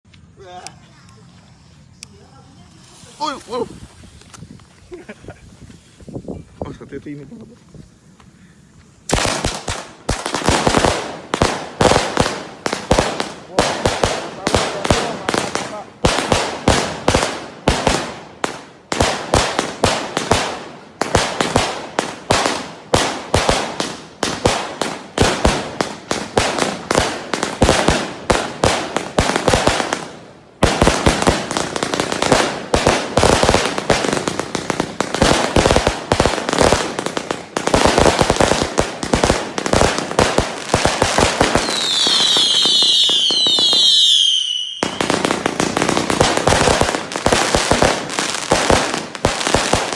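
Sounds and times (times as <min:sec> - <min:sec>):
falling firework whistles: 0:41.3 - 0:45.4.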